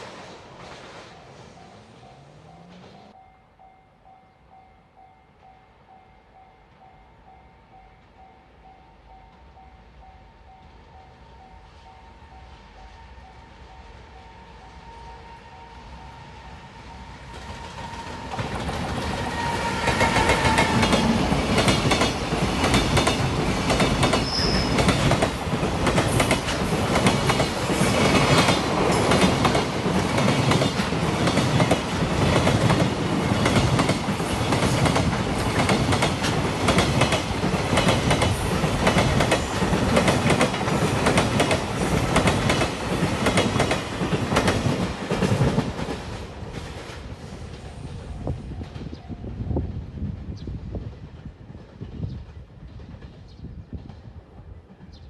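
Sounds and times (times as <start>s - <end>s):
freight train passing: 0.0s - 55.0s.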